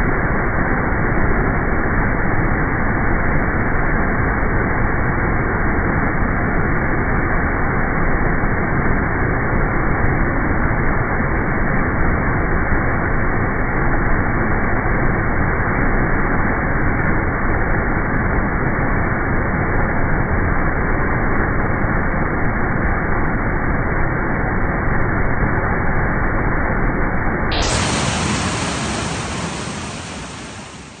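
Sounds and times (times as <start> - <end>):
floodwater rushing: 27.6 - 31.0.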